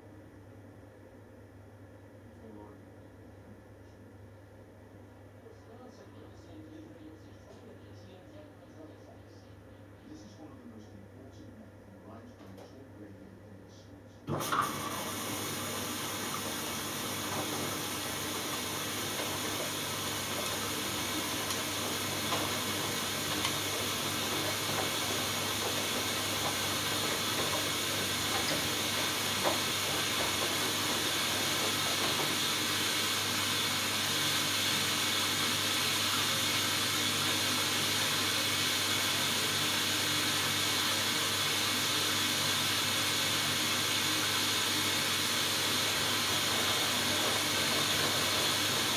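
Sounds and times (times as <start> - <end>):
washing machine filling with water: 14.3 - 48.9.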